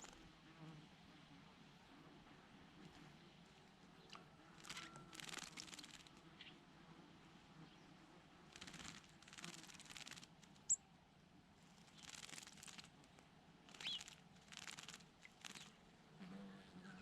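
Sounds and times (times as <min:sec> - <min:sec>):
small birds chirping: 0:08.5 - 0:10.8, 0:11.7 - 0:15.9.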